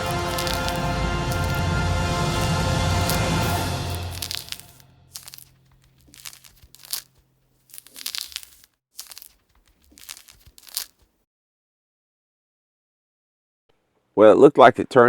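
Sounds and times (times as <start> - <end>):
paper crinkling and tearing: 0.0 - 11.2.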